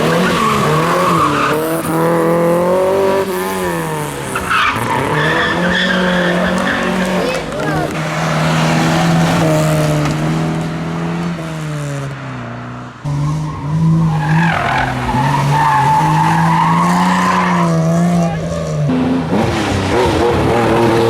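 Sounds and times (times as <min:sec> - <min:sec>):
car engine under power: 0:00.0 - 0:21.0
rally car engine at high revs: 0:00.0 - 0:21.0
tyres squealing: 0:03.4 - 0:11.2, 0:13.3 - 0:18.7.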